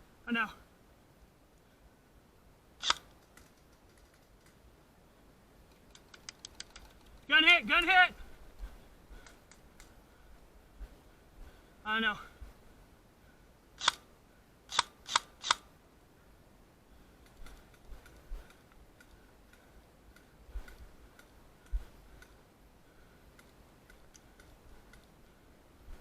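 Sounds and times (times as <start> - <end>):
faint ticks and thumps: 5.6 - 11.7, 17.2 - 22.4.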